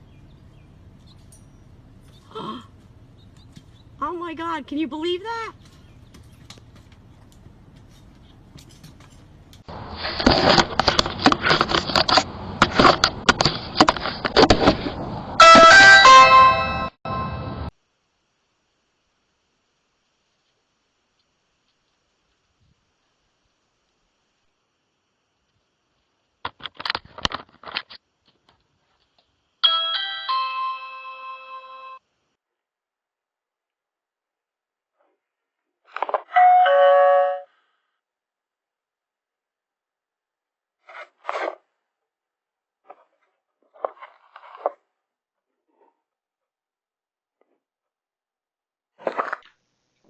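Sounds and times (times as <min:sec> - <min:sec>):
knocks and scrapes: 0:07.7 - 0:15.9, 0:35.8 - 0:36.4, 0:40.8 - 0:41.7, 0:42.8 - 0:44.9
doorbell electronic chime: 0:15.4 - 0:17.7, 0:29.6 - 0:32.0.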